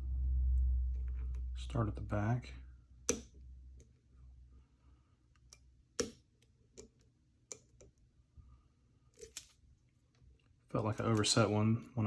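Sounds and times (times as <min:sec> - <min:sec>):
lock pick clicking: 0:05.4 - 0:07.9.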